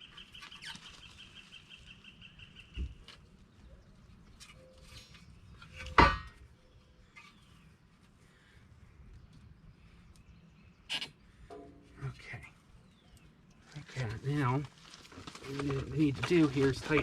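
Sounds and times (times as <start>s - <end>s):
bird chirping: 0.0s - 5.9s, 6.5s - 13.8s.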